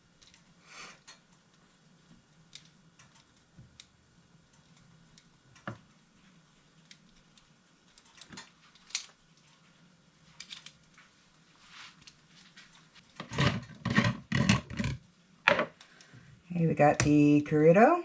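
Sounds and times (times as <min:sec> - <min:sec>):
light clicks and taps: 0:00.2 - 0:11.2.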